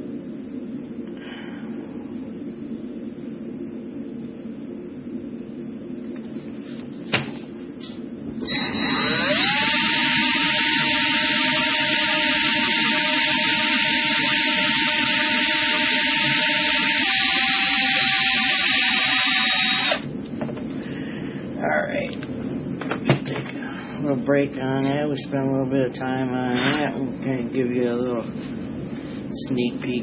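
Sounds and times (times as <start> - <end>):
electric drill whining: 8.4 - 20.1.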